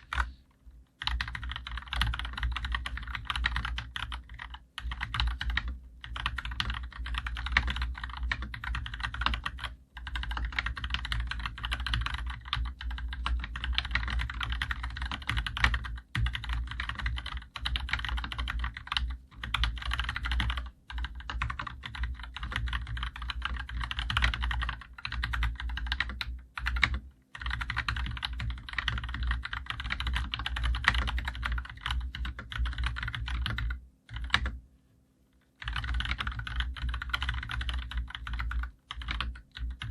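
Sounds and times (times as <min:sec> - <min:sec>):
fast mechanical keyboard typing: 0:01.0 - 0:34.6, 0:35.6 - 0:39.9.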